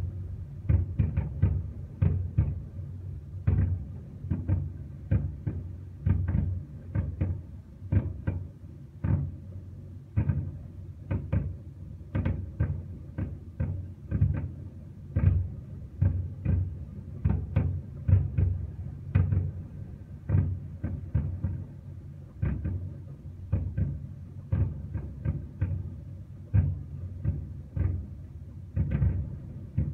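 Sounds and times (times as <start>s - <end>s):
fireworks bangs and booms: 28.8s - 29.9s.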